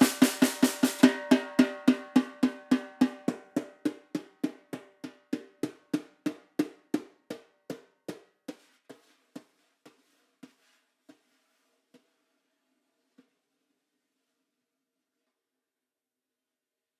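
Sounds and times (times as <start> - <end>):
snare drum strokes: 0.0 - 4.7.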